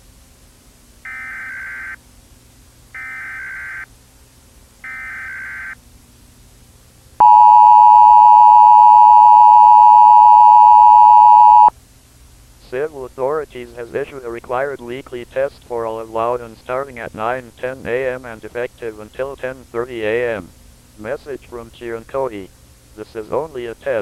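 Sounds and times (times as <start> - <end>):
two-tone attention signal: 7.2 - 11.7
warbling data tones: 7.2 - 11.7.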